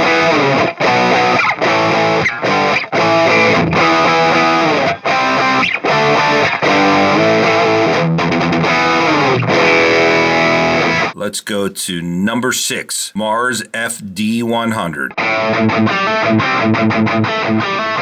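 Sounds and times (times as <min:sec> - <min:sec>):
distorted electric guitar chords: 0:00.0 - 0:11.1, 0:15.1 - 0:18.0.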